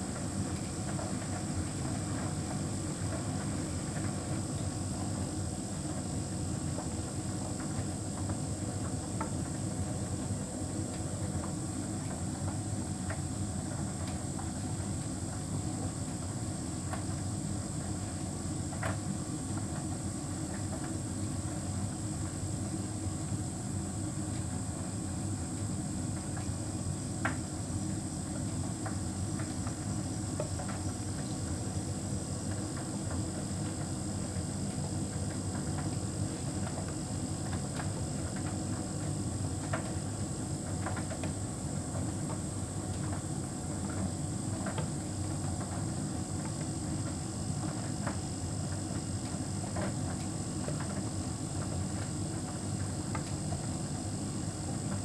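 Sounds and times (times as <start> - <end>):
tumble dryer drum humming: 0.0 - 55.0.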